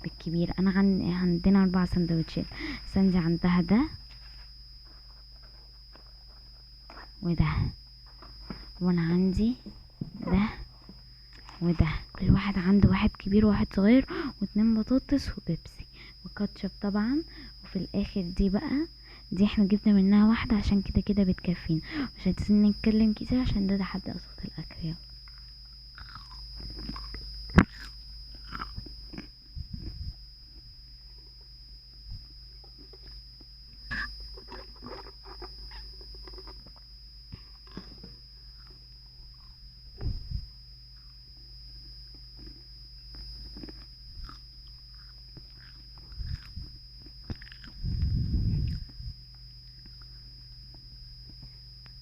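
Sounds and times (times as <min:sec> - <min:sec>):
people chewing food: 0:25.2 - 0:31.6, 0:32.2 - 0:40.2, 0:41.0 - 0:52.0.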